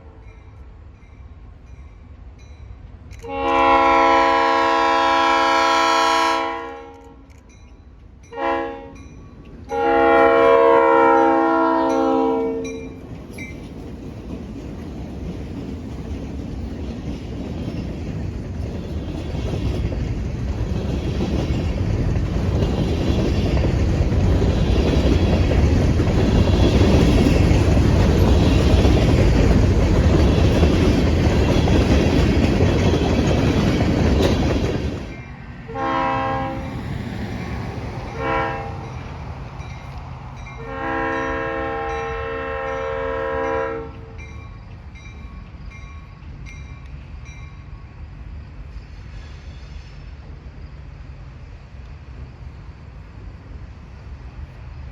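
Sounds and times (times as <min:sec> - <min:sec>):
diesel locomotive rumbling: 0:00.0 - 0:54.9
locomotive air horn blasts: 0:03.2 - 0:07.3, 0:08.3 - 0:09.0, 0:09.7 - 0:12.8, 0:35.7 - 0:36.7, 0:38.1 - 0:38.9, 0:40.6 - 0:44.2.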